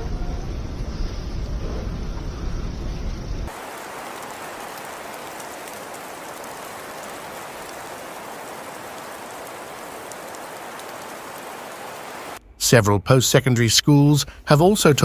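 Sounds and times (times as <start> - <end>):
rain falling steadily: 3.4 - 12.4.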